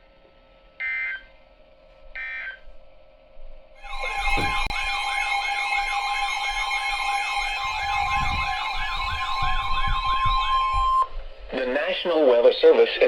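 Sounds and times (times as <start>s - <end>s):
siren-like sweeping tone: 3.8s - 11.3s
steady alarm tones: 3.8s - 11.4s.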